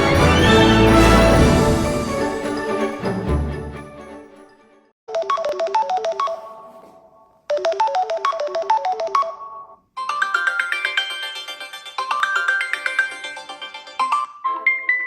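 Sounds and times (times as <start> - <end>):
bright ringtone tune: 5.2 - 6.9, 7.5 - 15.0.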